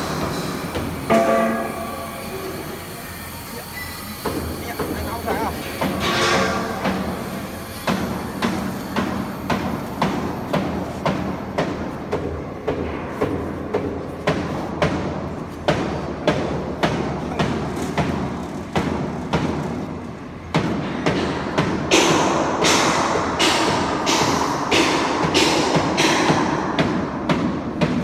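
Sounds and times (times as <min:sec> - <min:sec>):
foam cutting machine running: 0:00.0 - 0:20.8.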